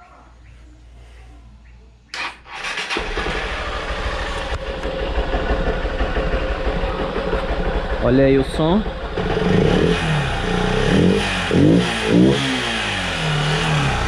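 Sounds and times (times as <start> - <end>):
motorcycle engine cranking: 2.2 - 8.1
motorcycle engine idling: 2.4 - 14.0.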